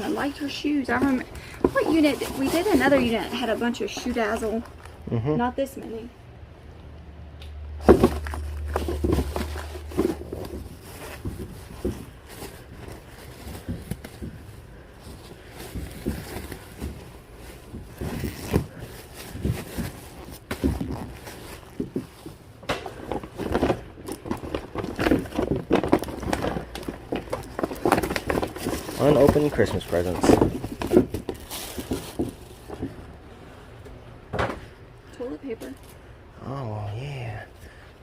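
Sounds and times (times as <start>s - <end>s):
items rustling and knocking: 0.0s - 5.0s, 7.8s - 36.1s.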